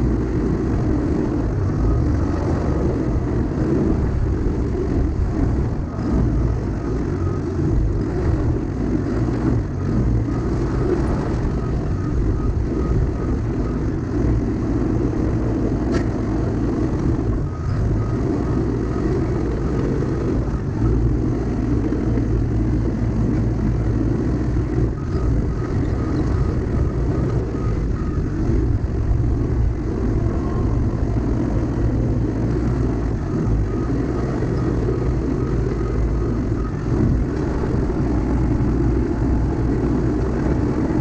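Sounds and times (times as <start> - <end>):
diesel engine running under load: 0.0 - 41.0
faint high chirp: 24.8 - 28.2.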